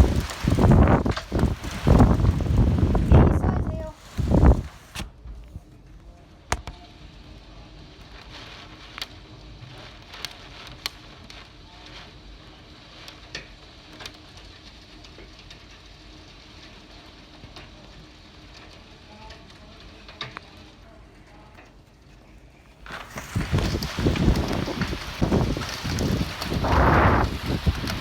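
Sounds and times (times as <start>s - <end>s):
hailstones clicking on hard surfaces: 0.0s - 5.0s, 6.5s - 22.1s, 22.7s - 28.0s
rain hissing: 0.0s - 5.6s, 6.5s - 21.3s, 22.6s - 28.0s
rush of noise: 23.0s - 28.0s.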